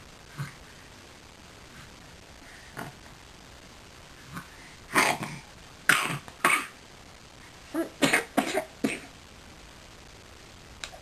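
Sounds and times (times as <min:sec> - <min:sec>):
baby coughing: 0:04.9 - 0:06.8, 0:07.7 - 0:09.2.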